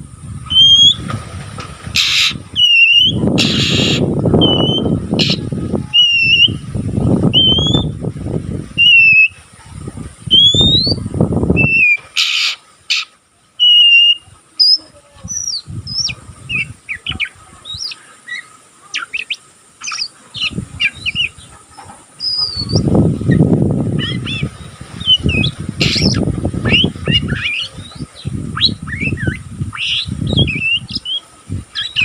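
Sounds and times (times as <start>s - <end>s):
bird whistled calls: 0.5s - 1.0s, 2.0s - 6.6s, 7.3s - 7.9s, 8.8s - 9.4s, 10.3s - 11.0s, 11.6s - 21.5s, 22.2s - 22.9s, 24.0s - 31.2s, 31.8s - 32.0s
scratchy bird chirps: 17.7s - 21.4s, 22.2s - 22.9s.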